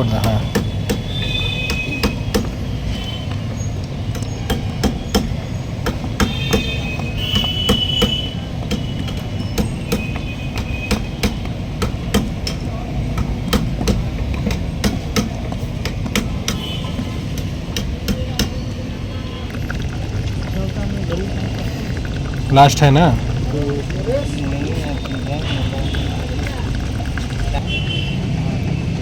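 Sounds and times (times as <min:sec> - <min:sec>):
sharp knocks: 0:00.1 - 0:02.6, 0:04.2 - 0:18.6
liquid pouring from a can: 0:19.5 - 0:28.4.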